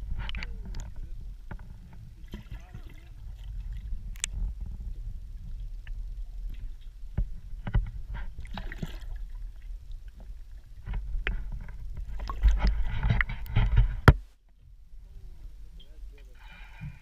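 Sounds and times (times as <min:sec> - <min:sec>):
knocks and clatters on boat: 0:00.0 - 0:04.9, 0:06.6 - 0:09.0, 0:10.2 - 0:14.3
wind rumble on microphone: 0:00.0 - 0:16.2.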